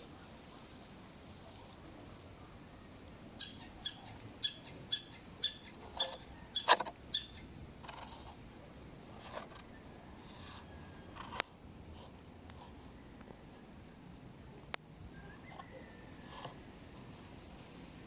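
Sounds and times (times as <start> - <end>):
bird calling sharp notes: 3.4 - 7.5.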